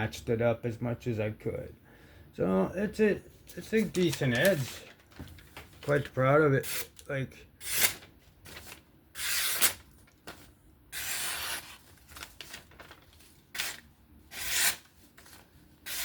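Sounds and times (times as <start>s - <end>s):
knife slicing through paper: 11.0s - 16.0s.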